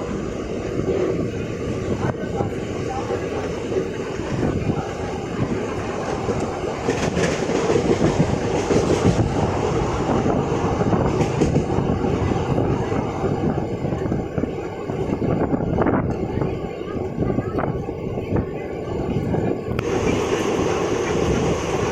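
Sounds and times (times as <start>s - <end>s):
loud clacks of train wheels: 0.0s - 16.5s
train wheels rumbling on rails: 0.0s - 21.9s.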